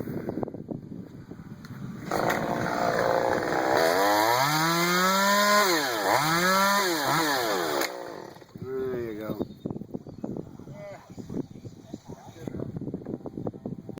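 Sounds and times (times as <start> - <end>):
chainsaw revving: 2.0 - 8.6.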